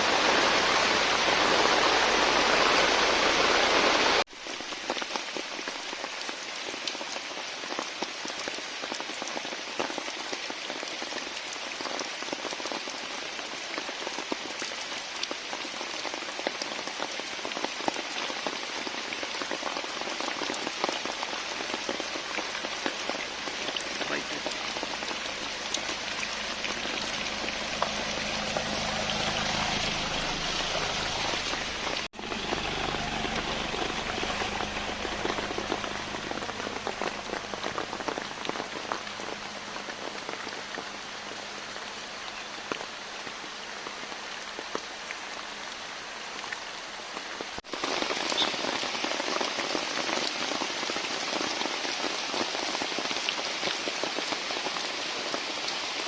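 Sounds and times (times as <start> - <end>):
rain falling steadily: 0.0 - 56.0
low hum: 23.4 - 41.9.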